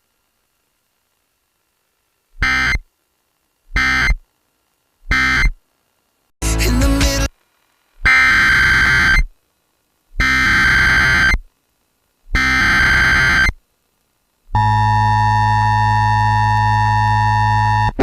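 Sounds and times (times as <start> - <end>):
shrill electronic data tones: 3.8 - 4.2, 8.0 - 9.3, 10.2 - 11.4, 12.3 - 13.6.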